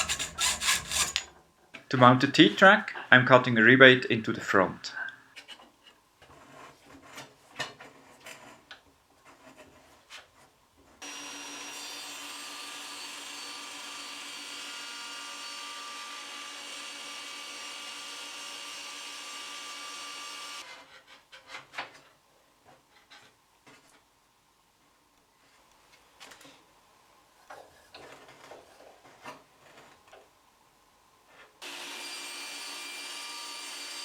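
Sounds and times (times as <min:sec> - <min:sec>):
power tool cutting wood: 0:00.0 - 0:01.3, 0:11.0 - 0:20.7, 0:31.6 - 0:34.0.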